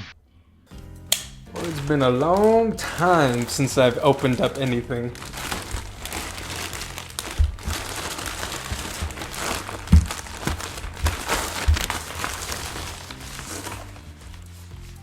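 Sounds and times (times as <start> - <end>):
wrapping crinkling and rustling: 1.5 - 15.0
dull knocks on package: 7.2 - 12.9.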